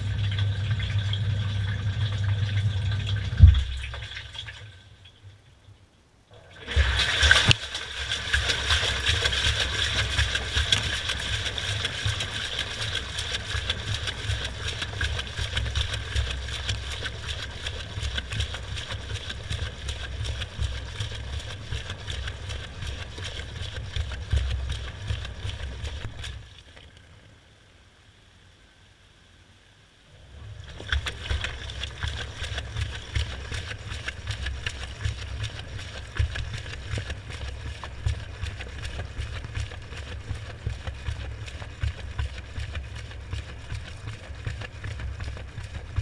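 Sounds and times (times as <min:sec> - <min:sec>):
water sloshing: 0:00.0 - 0:05.6, 0:06.3 - 0:27.0, 0:30.2 - 0:46.0
motor hum: 0:00.0 - 0:46.0
drum knocks: 0:03.4 - 0:03.8.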